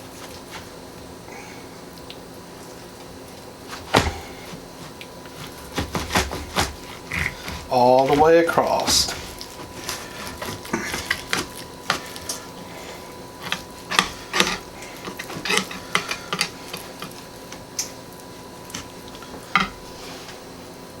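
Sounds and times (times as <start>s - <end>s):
knife slicing raw chicken: 3.7s - 12.6s, 13.4s - 18.0s.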